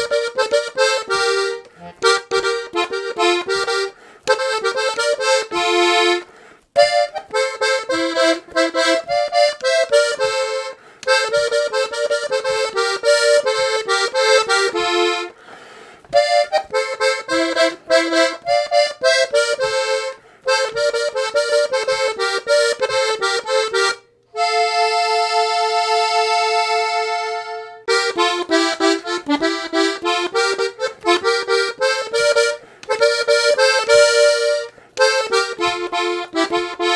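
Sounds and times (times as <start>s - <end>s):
button accordion melody: 0.0s - 36.9s.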